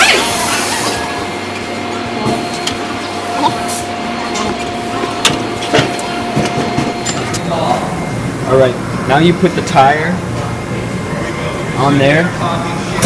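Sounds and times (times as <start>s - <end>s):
tire-changing machine whining: 0.0s - 10.1s.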